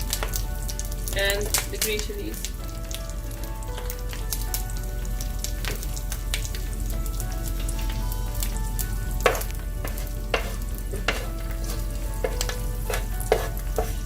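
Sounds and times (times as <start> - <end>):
leaves sizzling in hot ghee: 0.0 - 14.0
utensil knocking against pan: 9.2 - 14.0.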